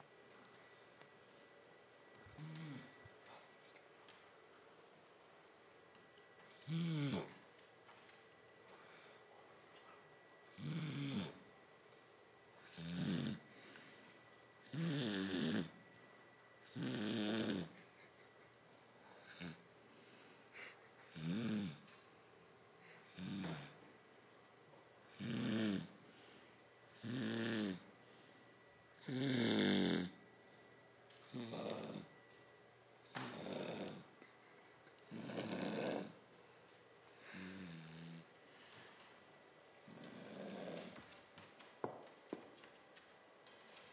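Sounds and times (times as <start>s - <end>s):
person snoring: 2.4s - 3.0s, 6.6s - 7.4s, 10.5s - 11.4s, 12.6s - 13.4s, 14.6s - 15.8s, 16.6s - 17.8s, 19.2s - 19.6s, 20.6s - 21.8s, 23.1s - 23.8s, 25.1s - 26.0s, 26.9s - 27.9s, 29.0s - 30.2s, 31.3s - 32.1s, 33.2s - 34.1s, 35.0s - 36.2s, 37.2s - 38.3s, 39.8s - 41.0s.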